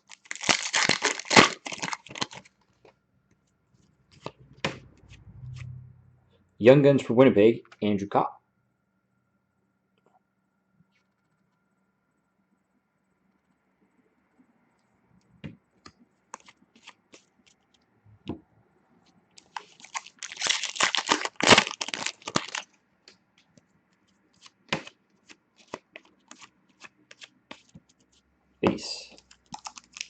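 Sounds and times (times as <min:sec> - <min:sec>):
foil wrapper tearing and crinkling: 0:00.0 - 0:02.5, 0:19.4 - 0:22.7, 0:29.2 - 0:30.0
cards clicking and snapping: 0:29.2 - 0:30.0.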